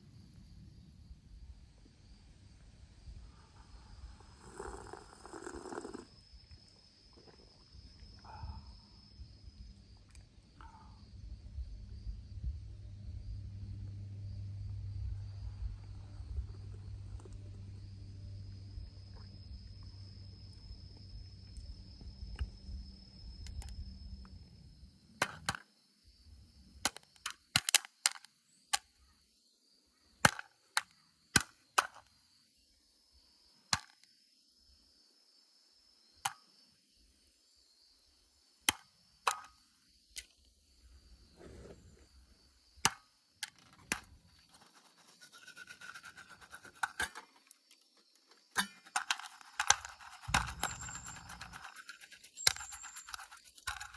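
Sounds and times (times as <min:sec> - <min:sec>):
low rumbling noise: 0:11.2 - 0:20.7.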